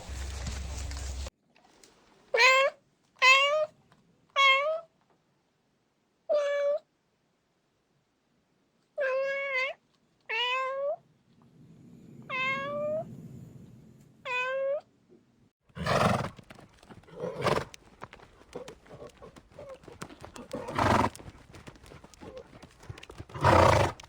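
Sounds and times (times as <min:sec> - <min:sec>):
cat meowing: 0:02.4 - 0:03.7, 0:04.4 - 0:04.8, 0:09.0 - 0:11.0, 0:12.3 - 0:13.0, 0:14.3 - 0:14.8.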